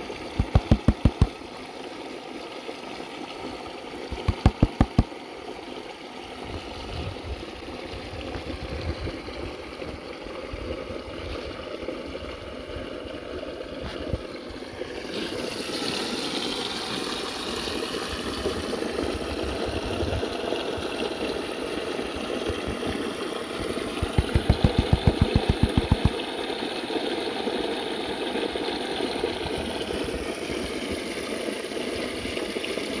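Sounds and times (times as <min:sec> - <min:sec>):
flowing creek water: 0:00.0 - 0:33.0
low thumps: 0:24.0 - 0:26.1.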